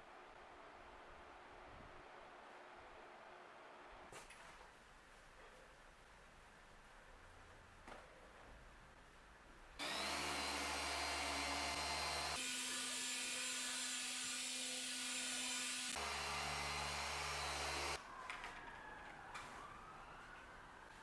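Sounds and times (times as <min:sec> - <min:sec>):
electric machine polisher running: 0:09.8 - 0:18.0.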